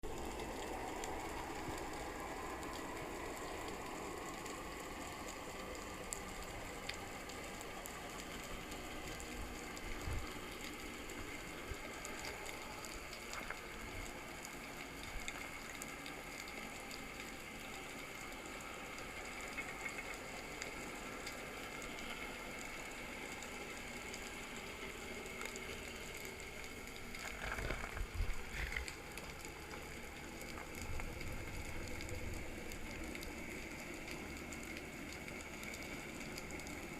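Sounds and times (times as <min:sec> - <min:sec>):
underwater hiss with crackling: 0:00.1 - 0:36.9.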